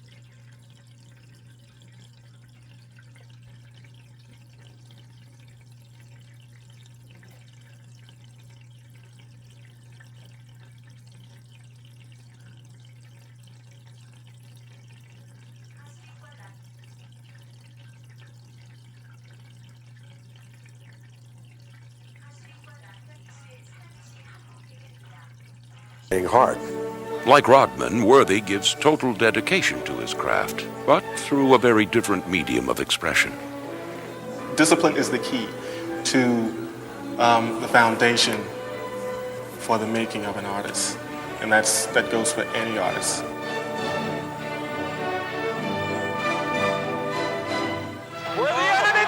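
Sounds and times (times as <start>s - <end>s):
aquarium water trickling: 0.0s - 49.0s.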